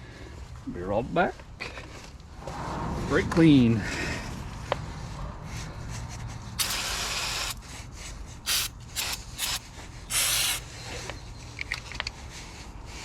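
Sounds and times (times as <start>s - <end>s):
aerosol spray hissing: 6.6s - 7.6s, 8.5s - 10.6s.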